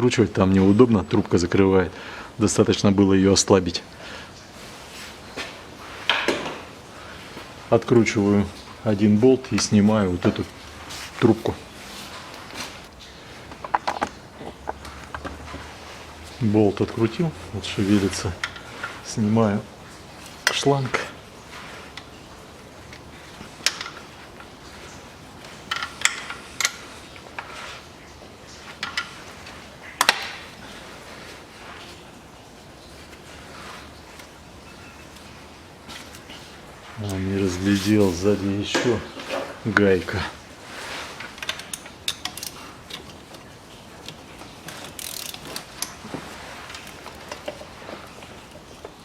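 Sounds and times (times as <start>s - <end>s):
ratchet wrench clicking: 44.8s - 45.9s.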